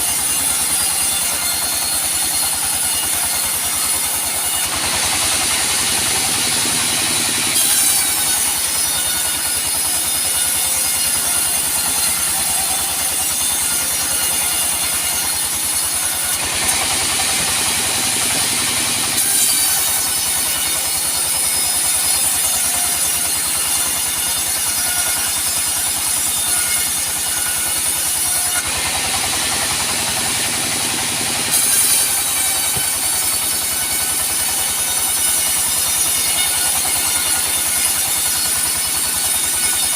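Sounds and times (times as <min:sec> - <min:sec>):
saw blade whine: 0:00.0 - 0:39.9
sawmill machine drone: 0:00.0 - 0:39.9.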